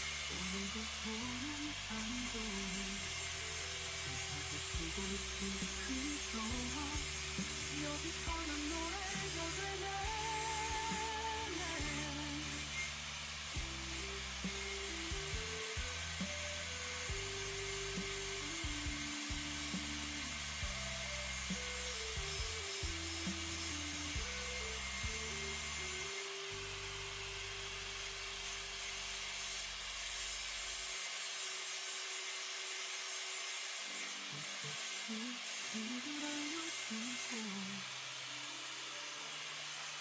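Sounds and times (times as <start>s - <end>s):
steady high hiss: 0.0s - 40.0s
instrumental background song: 0.4s - 28.8s.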